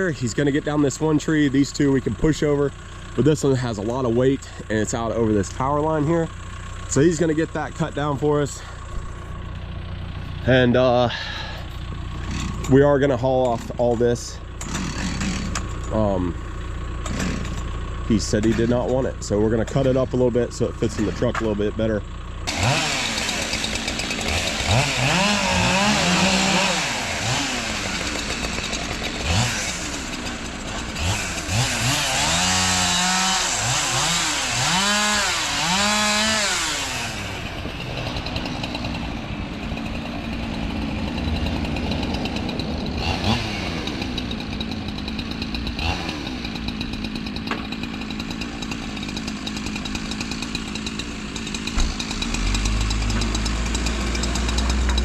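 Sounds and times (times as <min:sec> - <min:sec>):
chainsaw cutting wood: 0:10.3 - 0:16.2, 0:17.0 - 0:19.0, 0:22.4 - 0:55.0.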